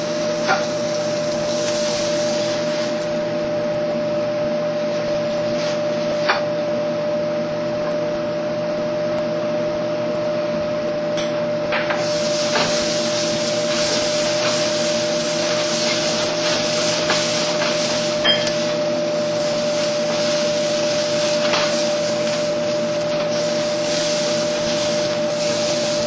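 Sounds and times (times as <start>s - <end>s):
steak sizzling on a grill: 0.0s - 3.2s, 11.9s - 26.0s.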